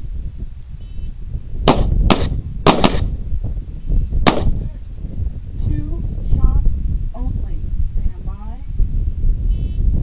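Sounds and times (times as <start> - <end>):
wind on microphone: 0.0 - 10.0
handgun shots: 1.7 - 3.1, 4.3 - 4.6.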